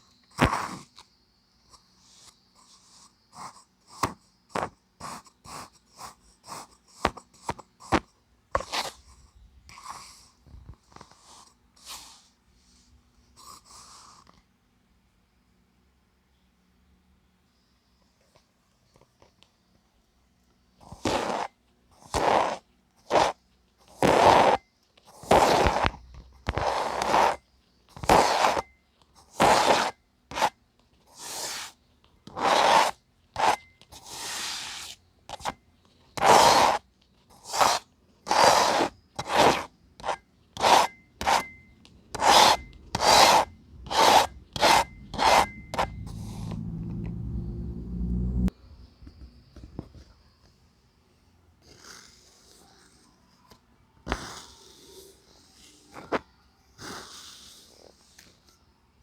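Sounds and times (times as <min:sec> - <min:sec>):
sand rubbed and scraped: 0:42.2 - 0:46.6
steady low rumble: 0:42.6 - 0:48.8.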